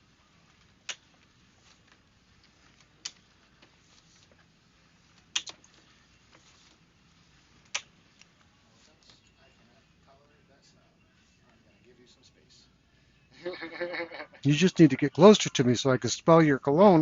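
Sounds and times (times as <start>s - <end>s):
short sharp clicks: 5.3s - 5.6s.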